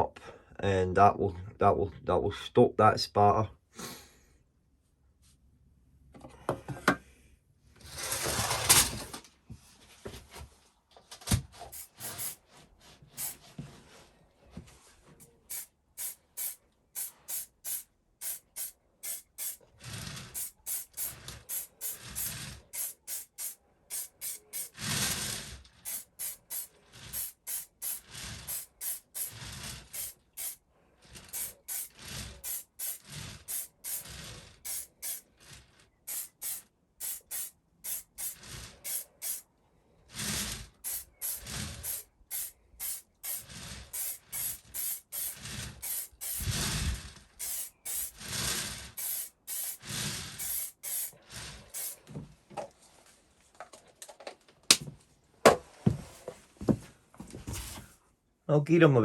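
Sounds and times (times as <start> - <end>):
aerosol can spraying: 11.7 - 12.4, 13.2 - 13.4, 15.5 - 19.7, 20.3 - 30.6, 31.3 - 35.3, 36.1 - 39.5, 40.8 - 46.8, 47.4 - 52.1.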